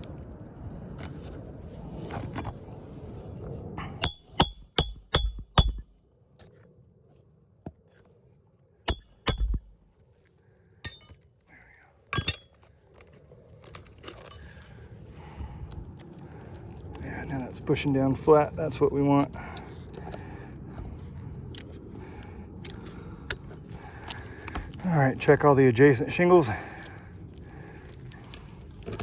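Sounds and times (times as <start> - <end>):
hammer striking roofing nails: 4.0 - 6.0, 8.9 - 9.8.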